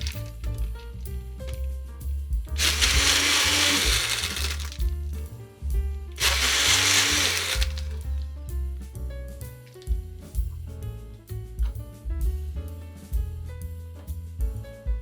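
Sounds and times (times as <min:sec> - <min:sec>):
blender motor running: 0:02.6 - 0:04.8, 0:06.2 - 0:08.0.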